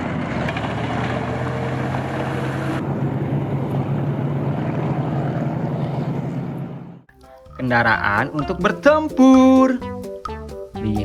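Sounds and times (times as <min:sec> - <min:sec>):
heavy engine humming: 0:00.0 - 0:07.0.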